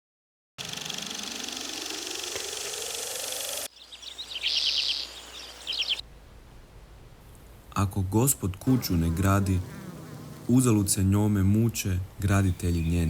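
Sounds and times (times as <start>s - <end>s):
bird chirping trills: 0.6s - 6.0s, 12.3s - 13.0s
high insect-like hiss: 0.6s - 6.0s.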